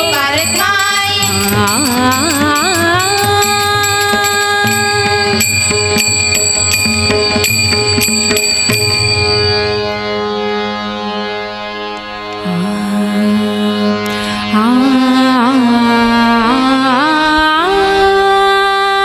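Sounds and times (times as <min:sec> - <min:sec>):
drum strokes: 0:00.0 - 0:10.1
hand cymbals striking: 0:00.0 - 0:10.2
harmonium holding a chord: 0:00.0 - 0:18.9.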